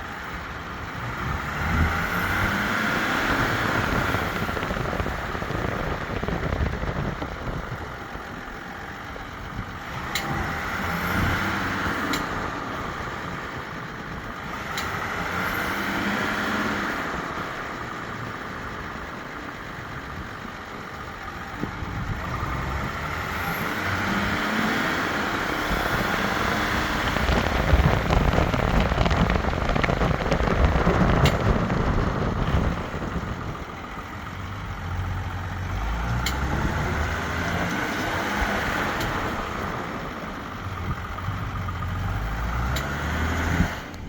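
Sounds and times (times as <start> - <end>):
truck engine running: 0.0 - 44.0
sharp metallic ticks: 14.6 - 15.0.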